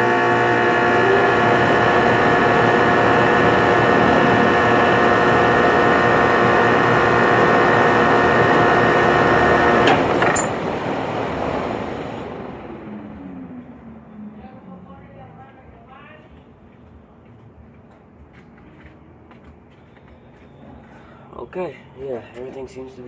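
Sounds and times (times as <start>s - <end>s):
compressor humming: 0.0s - 16.5s
condenser fan rushing: 0.0s - 16.6s.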